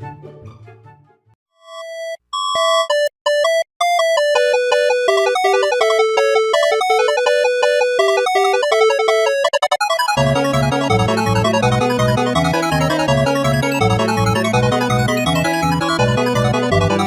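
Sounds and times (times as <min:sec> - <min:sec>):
orchestral music with plucked strings: 0:00.0 - 0:01.4
fast electronic beeping melody: 0:01.6 - 0:17.0.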